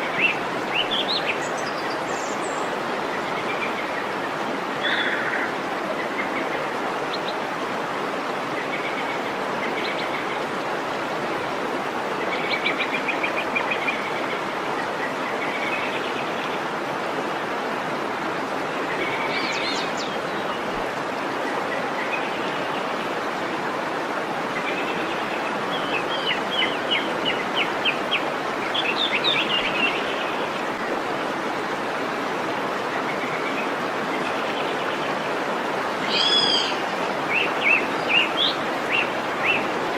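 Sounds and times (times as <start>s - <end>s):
waterfall rushing: 0.0s - 39.9s
small birds trilling: 35.9s - 39.8s.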